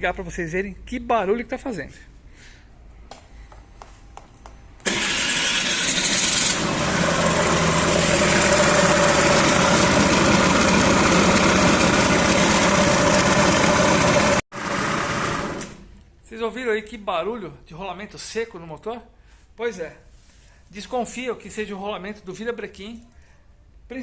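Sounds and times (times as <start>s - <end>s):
scooter engine starting and running: 4.8s - 15.9s.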